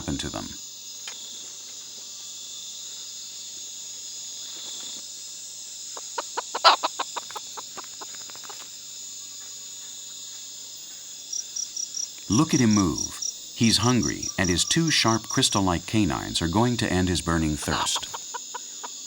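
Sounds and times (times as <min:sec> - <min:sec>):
high-pitched insect chorus: 0:00.0 - 0:19.0
chicken clucking: 0:06.0 - 0:08.6, 0:13.6 - 0:19.0.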